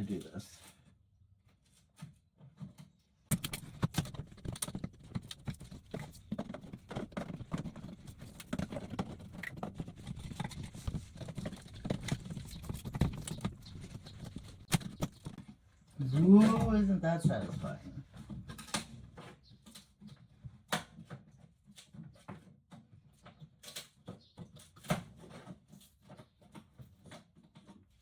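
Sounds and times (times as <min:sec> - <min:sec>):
panel prying off with crackles: 0:03.3 - 0:15.5.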